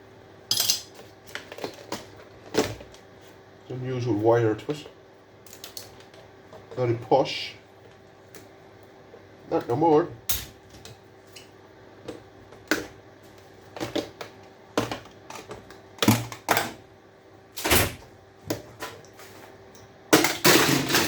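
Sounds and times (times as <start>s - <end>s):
appliance parts clattering: 0.5s - 2.9s, 20.2s - 21.0s.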